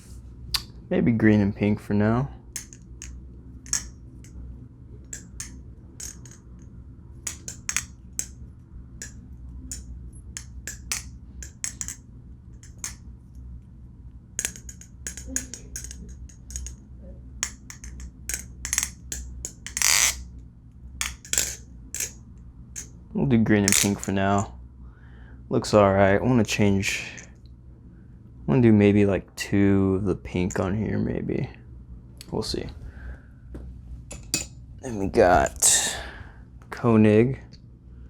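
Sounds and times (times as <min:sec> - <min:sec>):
low steady hum: 0:00.0 - 0:38.0
knife clattering: 0:02.6 - 0:03.1, 0:03.7 - 0:04.0, 0:05.1 - 0:06.5, 0:07.3 - 0:08.4, 0:10.4 - 0:12.0, 0:12.6 - 0:13.0, 0:14.4 - 0:16.8, 0:17.4 - 0:20.2, 0:21.0 - 0:22.2, 0:23.7 - 0:24.4, 0:34.1 - 0:34.5
knife clicks and clinks: 0:02.6 - 0:03.1, 0:03.7 - 0:03.9, 0:05.1 - 0:06.4, 0:07.3 - 0:08.3, 0:10.4 - 0:12.0, 0:14.4 - 0:16.8, 0:17.4 - 0:20.2, 0:21.0 - 0:22.2, 0:23.7 - 0:24.4.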